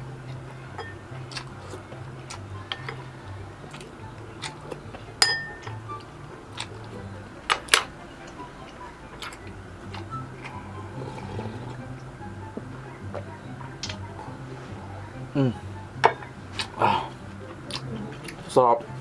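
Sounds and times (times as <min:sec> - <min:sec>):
soft background music: 0:00.0 - 0:19.0
utensils clinking against dishes: 0:00.2 - 0:03.1, 0:03.7 - 0:10.5.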